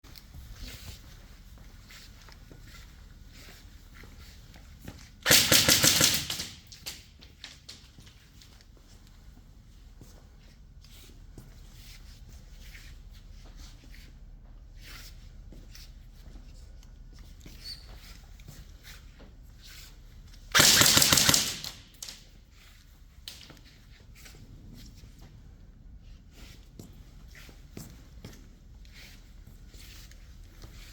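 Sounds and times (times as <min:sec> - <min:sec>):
airsoft gun burst: 0:05.2 - 0:07.0, 0:20.5 - 0:22.2.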